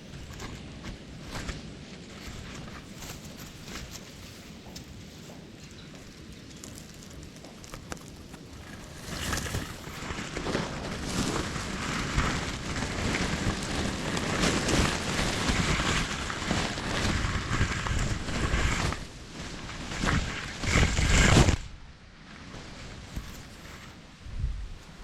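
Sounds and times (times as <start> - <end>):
wind buffeting microphone: 24.2 - 25.0.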